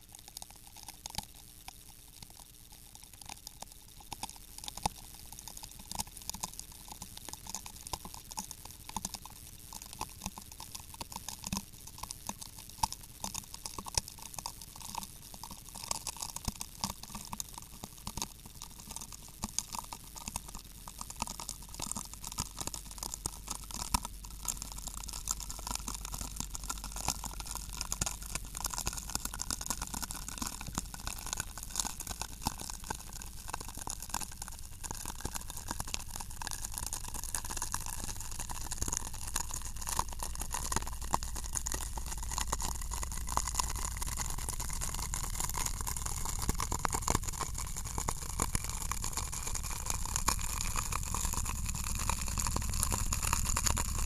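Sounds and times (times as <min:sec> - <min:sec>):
chip bag crinkling: 0:21.4 - 0:54.0
chips crackling: 0:24.3 - 0:54.0.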